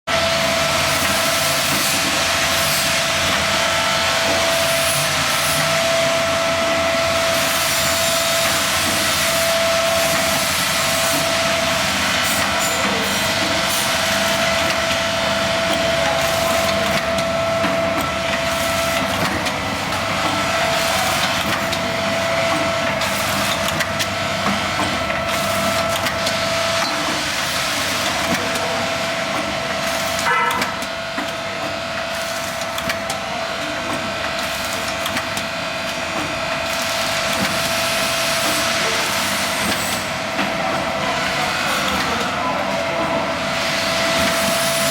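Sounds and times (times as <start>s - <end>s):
filling machine whine and hiss: 0.1s - 44.9s
machine clicks: 12.2s - 27.2s, 29.3s - 33.2s, 33.8s - 40.9s.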